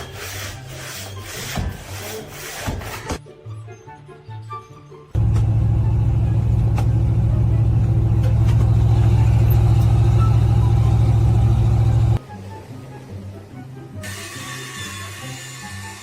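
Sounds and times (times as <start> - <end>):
engine running steadily: 5.2 - 12.2.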